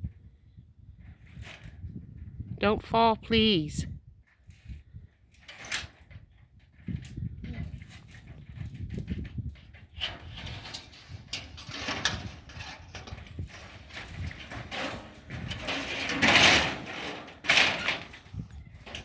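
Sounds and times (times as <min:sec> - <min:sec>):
tin roofing scraping: 0:04.2 - 0:19.0.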